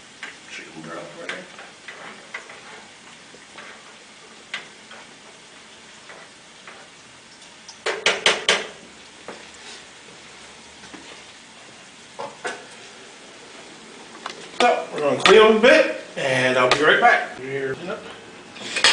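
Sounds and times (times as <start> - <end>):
food sizzling in a frying pan: 0.0 - 18.9
utensil knocking against pan: 7.8 - 8.8.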